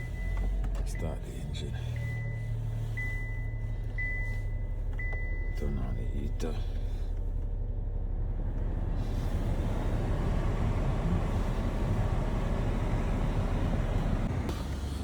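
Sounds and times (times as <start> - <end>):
car engine idling: 0.0 - 15.0
heater blower fan rushing: 9.0 - 15.0.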